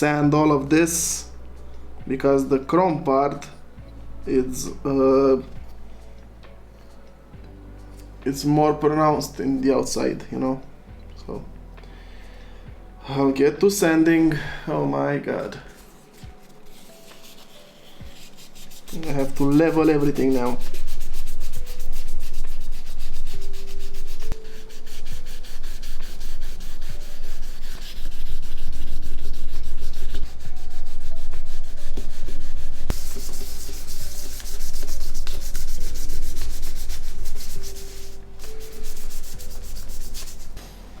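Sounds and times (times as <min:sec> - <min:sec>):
sandpaper rubbing by hand: 0:16.1 - 0:40.6.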